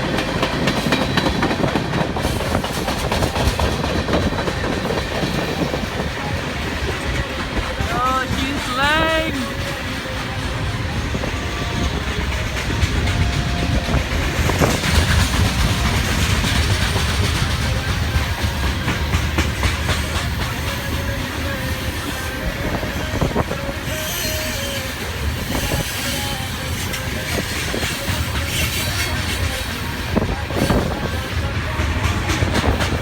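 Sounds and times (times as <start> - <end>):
train wheels clacking on rails: 0.0 - 33.0
wheels squealing on rail: 9.3 - 33.0.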